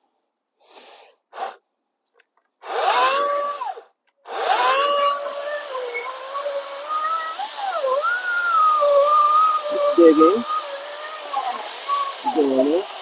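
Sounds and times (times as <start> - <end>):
electric chainsaw cutting log: 2.6 - 13.0.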